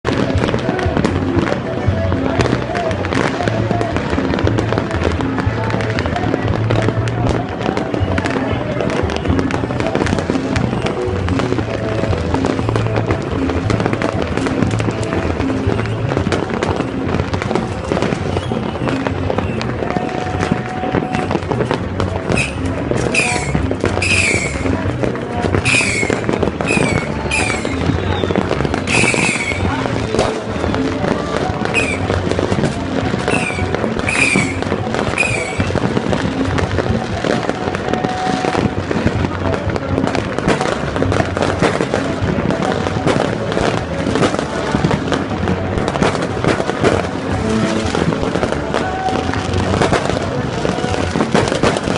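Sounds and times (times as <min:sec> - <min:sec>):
fireworks crackling and banging: 0:00.0 - 0:51.9
music: 0:00.0 - 0:51.9
firework whistles falling in pitch: 0:22.3 - 0:24.6, 0:25.6 - 0:29.7, 0:31.7 - 0:32.1, 0:33.3 - 0:35.8.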